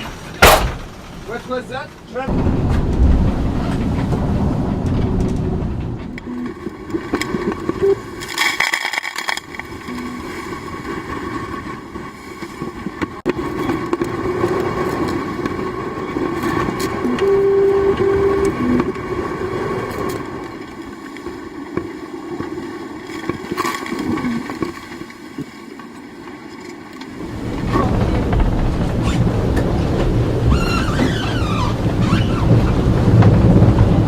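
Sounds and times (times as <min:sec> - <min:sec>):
sea noise: 0:00.0 - 0:34.0
wind buffeting microphone: 0:02.3 - 0:08.2, 0:27.1 - 0:34.0
short tones: 0:06.2 - 0:06.6, 0:09.9 - 0:10.4, 0:17.0 - 0:19.0.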